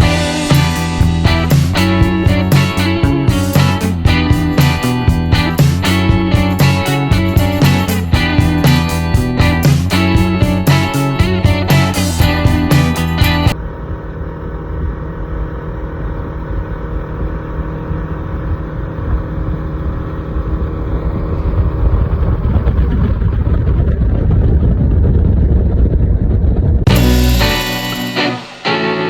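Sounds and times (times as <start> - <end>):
engine running: 0.0 - 29.0.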